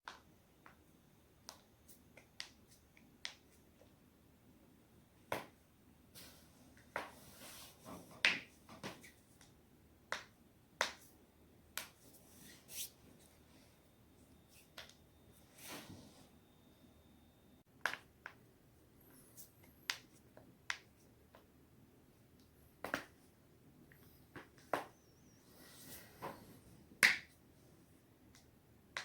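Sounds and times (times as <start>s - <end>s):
soft rustles of movement: 6.1s - 9.5s, 12.0s - 16.4s.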